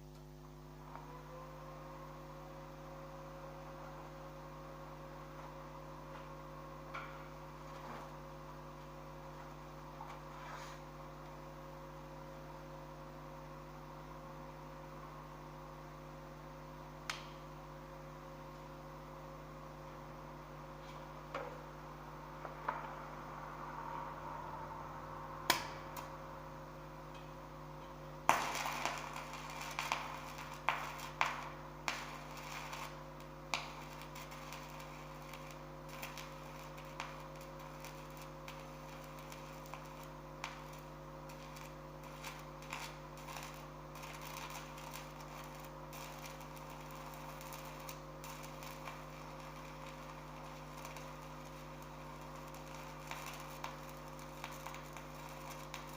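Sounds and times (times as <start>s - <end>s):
welding machine electrical hum: 0.0s - 55.9s
welding arc crackling and popping: 5.0s - 12.1s, 17.0s - 18.7s, 25.4s - 55.9s.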